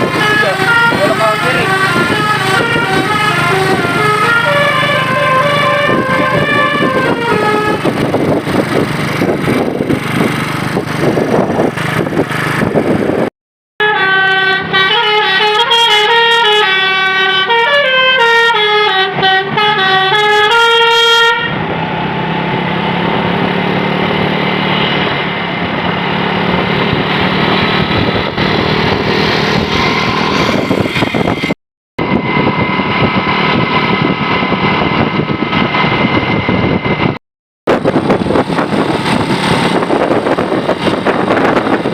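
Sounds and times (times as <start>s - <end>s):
musical air horn tune: 0.0s - 7.9s, 13.8s - 21.6s
large vehicle running: 0.0s - 41.9s.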